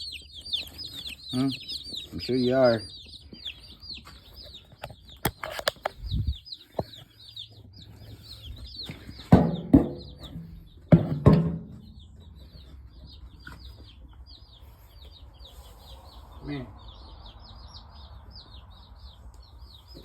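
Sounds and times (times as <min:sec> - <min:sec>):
chicks peeping: 0:00.0 - 0:20.0
knocks and rustles: 0:08.8 - 0:14.0.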